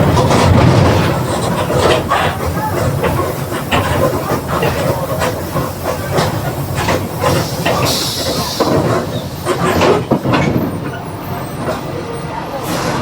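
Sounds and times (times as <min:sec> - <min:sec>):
air hiss: 0:07.2 - 0:09.4.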